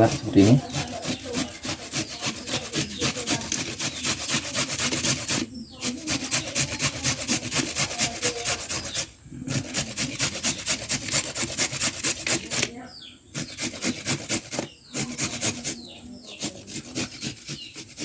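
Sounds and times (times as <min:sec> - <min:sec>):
root grated on hand grater: 0:00.0 - 0:18.0.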